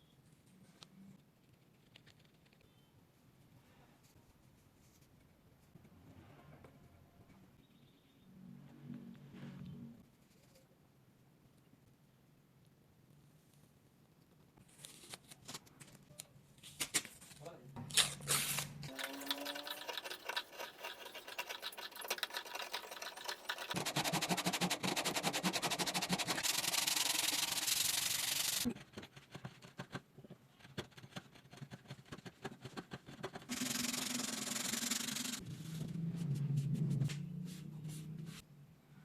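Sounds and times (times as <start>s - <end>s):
wood being sanded: 18.9s - 28.7s.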